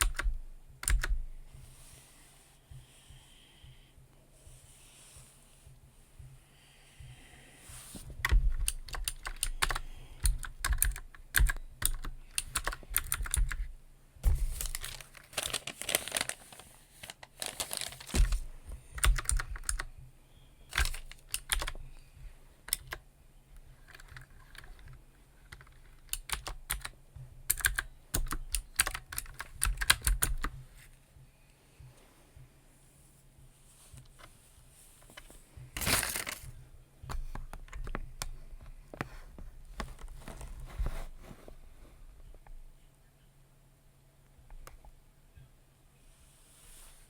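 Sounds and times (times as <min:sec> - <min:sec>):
typing on computer keyboard: 0:00.0 - 0:01.2, 0:08.2 - 0:13.7, 0:19.0 - 0:19.9, 0:20.7 - 0:21.8, 0:22.7 - 0:23.0, 0:23.8 - 0:26.9, 0:27.5 - 0:30.5.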